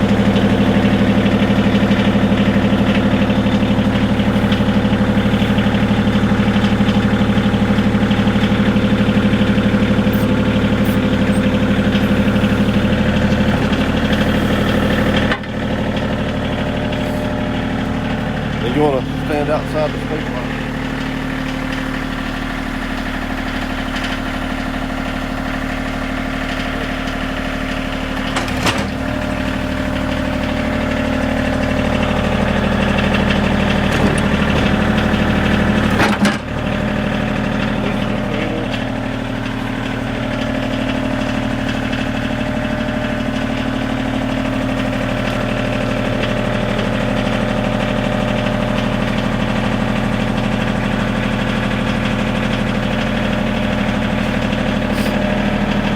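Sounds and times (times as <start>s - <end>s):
tractor diesel engine idling: 0.0s - 55.9s
short clunks: 28.2s - 30.7s.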